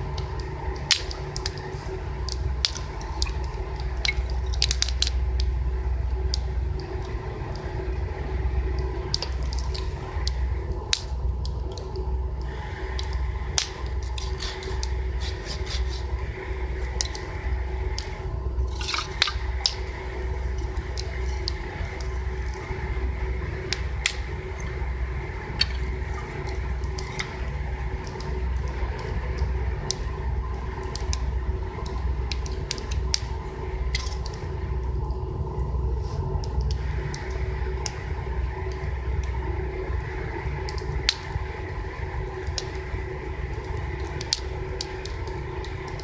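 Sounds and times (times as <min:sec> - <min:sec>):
campfire crackling: 0:00.0 - 0:46.0
low rumble: 0:00.0 - 0:46.0
sharp pops and snaps: 0:00.1 - 0:08.1, 0:08.7 - 0:16.2, 0:16.8 - 0:22.7, 0:23.7 - 0:24.8, 0:25.4 - 0:30.1, 0:30.7 - 0:35.2, 0:40.6 - 0:41.4, 0:42.4 - 0:46.0.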